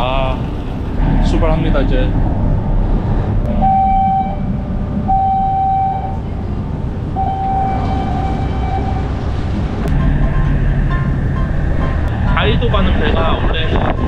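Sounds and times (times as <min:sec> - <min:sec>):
boat engine rumble: 0:00.0 - 0:14.0
ferry horn blasts: 0:03.4 - 0:14.0.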